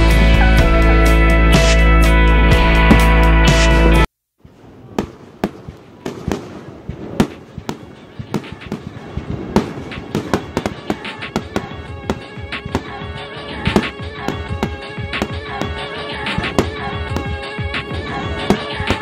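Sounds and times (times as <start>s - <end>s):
fireworks crackle: 4.4s - 19.0s
fireworks popping and banging: 4.4s - 19.0s.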